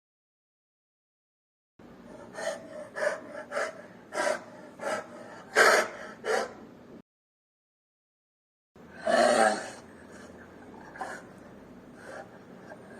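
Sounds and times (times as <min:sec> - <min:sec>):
bear huffing: 0:02.1 - 0:06.6, 0:08.9 - 0:12.9.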